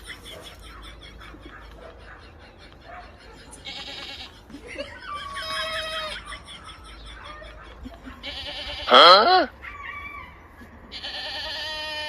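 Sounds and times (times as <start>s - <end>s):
goat bleating: 3.5s - 4.6s, 8.0s - 9.6s, 10.8s - 12.0s.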